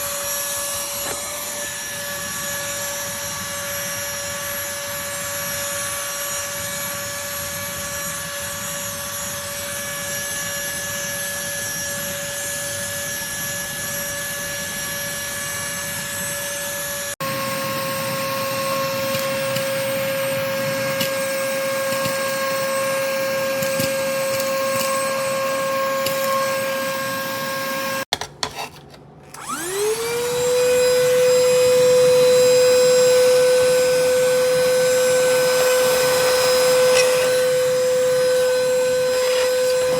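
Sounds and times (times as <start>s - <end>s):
handheld vacuum cleaner whine: 0.0s - 28.1s, 29.2s - 39.9s.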